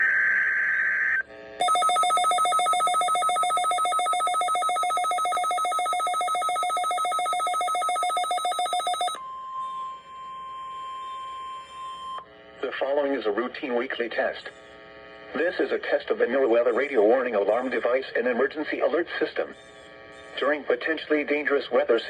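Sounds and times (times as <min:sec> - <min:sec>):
steady single-pitch alarm tone: 0:00.0 - 0:12.4
pulsing two-tone beeping alarm: 0:01.6 - 0:12.3.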